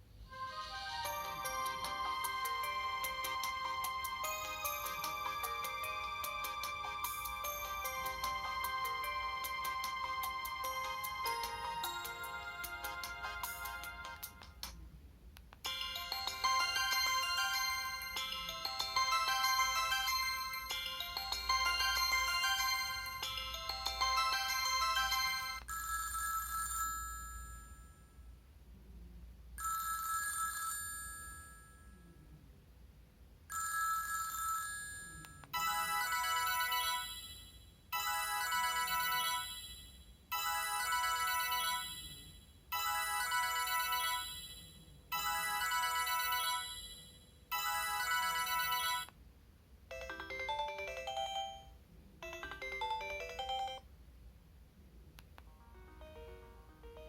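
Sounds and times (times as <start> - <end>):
bright ringtone phrase: 0.3 - 9.5, 10.1 - 14.2, 15.7 - 28.0, 49.9 - 53.8, 55.7 - 57.0
ringtone tune: 0.3 - 14.7, 15.6 - 28.2, 33.5 - 49.1, 49.9 - 53.9, 55.6 - 57.0
phone chime ringtone: 0.6 - 14.2, 15.7 - 28.2, 29.6 - 32.1, 33.5 - 49.1, 49.9 - 53.9, 55.8 - 57.0.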